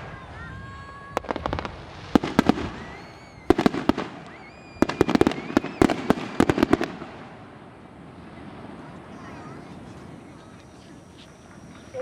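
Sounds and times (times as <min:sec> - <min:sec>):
fireworks bangs and crackles: 0:00.0 - 0:12.0
faint rising whistles: 0:02.6 - 0:06.0, 0:08.2 - 0:12.0.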